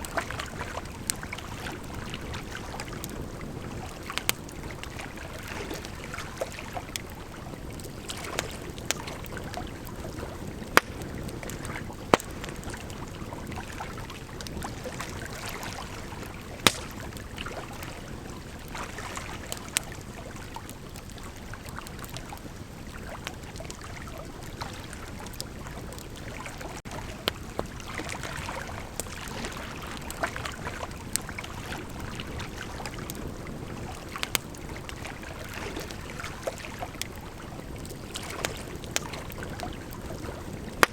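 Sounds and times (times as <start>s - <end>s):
fire crackling and popping: 0.0s - 26.2s, 26.9s - 40.9s
bonfire hissing: 16.1s - 17.4s.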